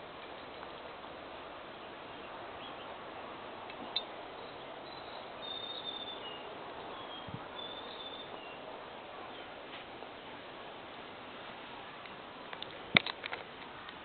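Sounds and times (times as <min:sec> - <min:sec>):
steady background noise: 0:00.0 - 0:14.0
faint high chirps: 0:03.9 - 0:08.6.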